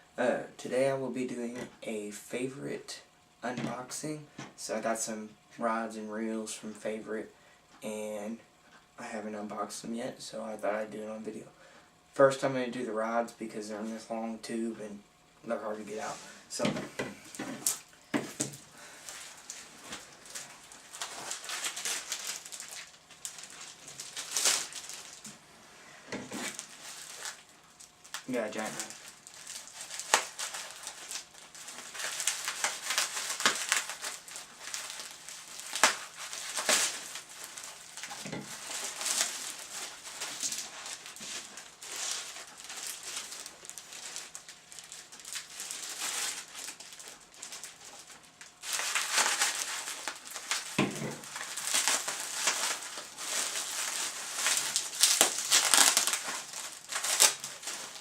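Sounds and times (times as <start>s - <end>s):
packaging crinkling and rustling: 15.7s - 25.4s, 26.1s - 58.0s.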